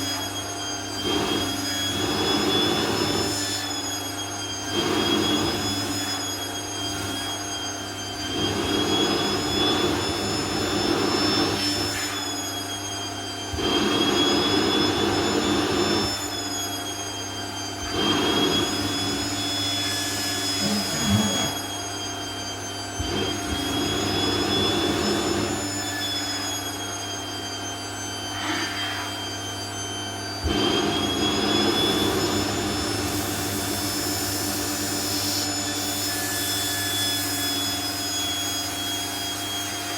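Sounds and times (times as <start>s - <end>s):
vacuum cleaner motor whine: 0.0s - 39.9s
vacuum suction rush over fabric: 1.0s - 3.8s, 4.6s - 5.9s, 6.9s - 16.5s, 17.8s - 22.3s, 23.0s - 26.7s, 30.4s - 36.0s.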